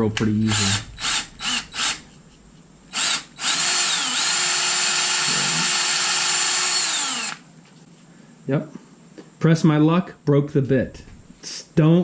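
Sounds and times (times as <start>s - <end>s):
power drill boring into metal: 0.5s - 2.0s, 2.9s - 7.4s.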